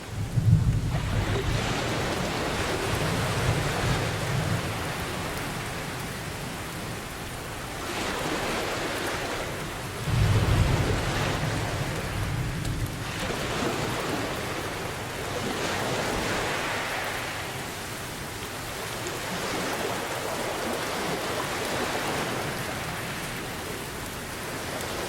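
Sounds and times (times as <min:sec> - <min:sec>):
ocean waves: 0:00.0 - 0:25.0
steady rain: 0:00.0 - 0:25.0
deep rolling thunder: 0:00.1 - 0:05.1, 0:10.0 - 0:14.7.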